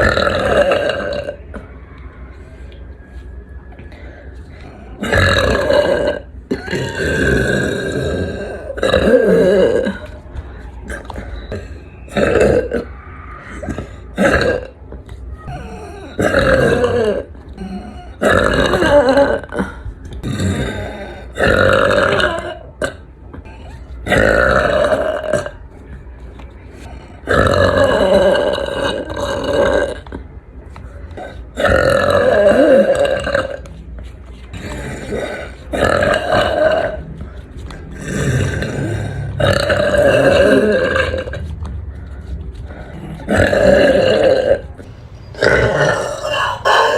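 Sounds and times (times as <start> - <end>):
woman belching: 0.0 - 1.4, 5.0 - 10.1, 11.0 - 12.9, 13.6 - 14.8, 15.5 - 23.0, 24.1 - 25.6, 27.3 - 30.1, 31.2 - 33.6, 34.6 - 37.0, 38.0 - 41.4, 43.2 - 44.7, 45.4 - 46.9
woman burping loudly: 0.0 - 1.6, 5.0 - 10.1, 10.9 - 12.9, 13.5 - 14.8, 15.5 - 25.6, 27.3 - 30.1, 31.2 - 33.7, 34.6 - 37.0, 38.0 - 41.4, 43.2 - 46.9.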